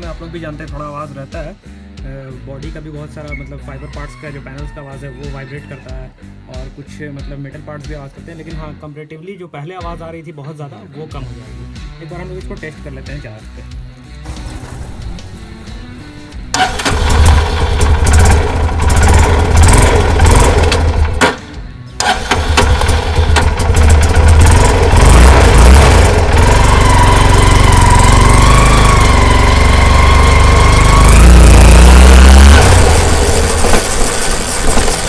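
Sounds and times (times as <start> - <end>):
motorcycle engine running: 14.2 - 35.0.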